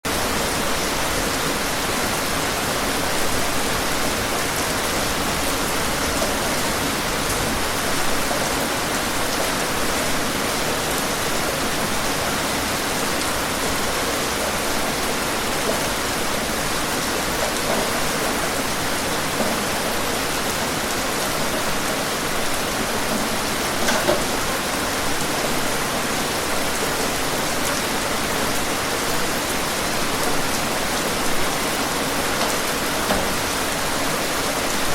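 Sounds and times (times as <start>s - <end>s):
heavy rain pouring: 0.0s - 34.9s
loud rain splashes: 0.1s - 34.9s.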